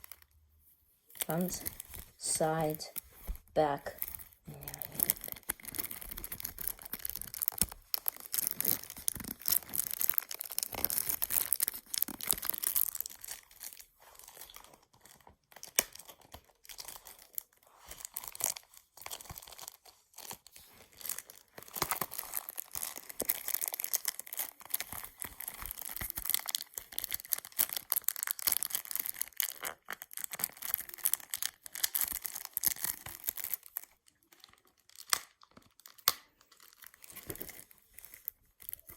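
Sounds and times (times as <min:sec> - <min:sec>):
plastic shrink-wrap crinkling and tearing: 0:00.0 - 0:02.2, 0:02.8 - 0:38.9.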